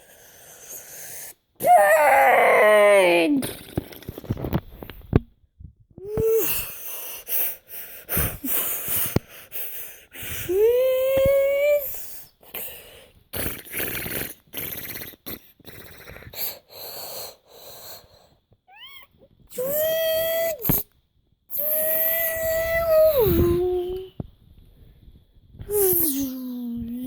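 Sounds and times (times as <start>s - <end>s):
child vocal whine: 0.6s - 3.4s, 6.0s - 6.8s, 10.3s - 12.3s, 18.7s - 20.8s, 21.5s - 24.2s, 25.6s - 27.0s
child making mouth sound effects: 13.4s - 16.6s, 19.5s - 20.9s, 21.5s - 24.1s, 25.6s - 27.0s.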